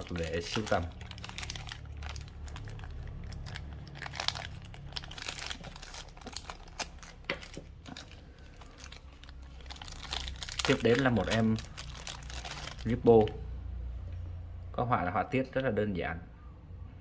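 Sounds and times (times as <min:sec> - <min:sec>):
rustling and crinkling handling: 0:00.0 - 0:13.4.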